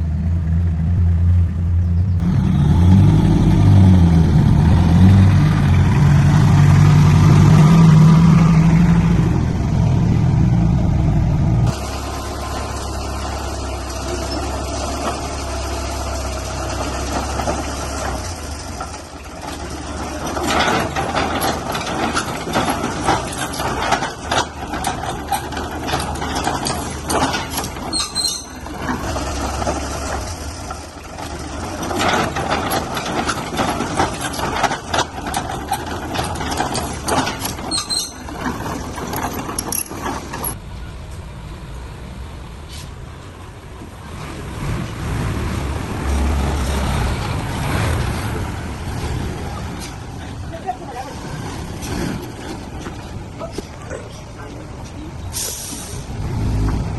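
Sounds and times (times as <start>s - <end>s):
diesel engine rumble: 0.0s - 56.9s
machinery clanking and rattling: 10.8s - 40.6s, 44.8s - 56.9s
high squeak: 27.9s - 28.8s, 37.6s - 38.4s.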